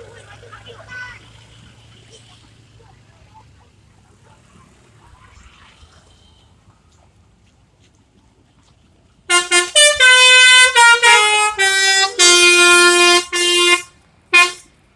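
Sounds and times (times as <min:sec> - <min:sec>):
musical air horn playing a tune: 0:09.3 - 0:14.7.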